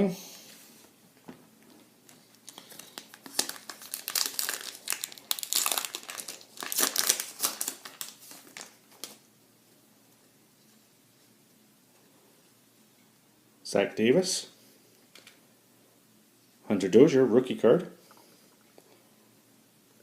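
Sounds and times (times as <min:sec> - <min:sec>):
foil wrapper crinkling: 0:01.6 - 0:09.2.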